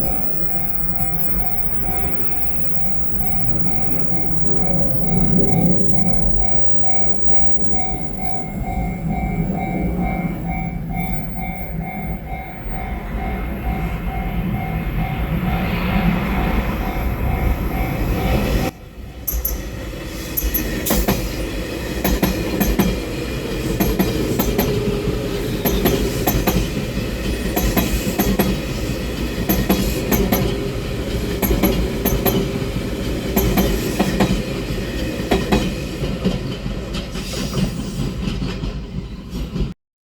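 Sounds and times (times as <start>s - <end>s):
low train rumble: 0.0s - 39.8s
train wheels clacking over rail joint: 20.3s - 39.7s.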